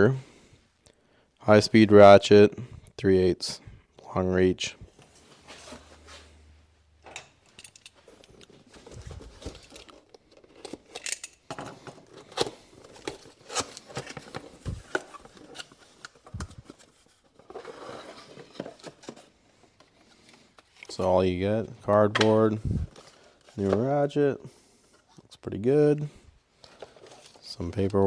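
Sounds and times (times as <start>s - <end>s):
cardboard packaging rustling: 8.1s - 11.1s, 11.8s - 21.0s.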